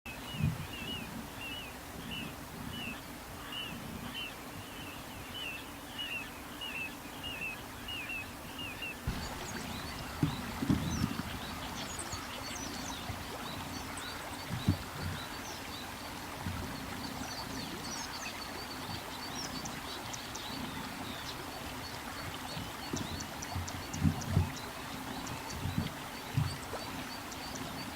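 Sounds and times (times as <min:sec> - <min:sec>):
low thumps: 0:09.1 - 0:12.2
plovers calling: 0:09.1 - 0:13.4.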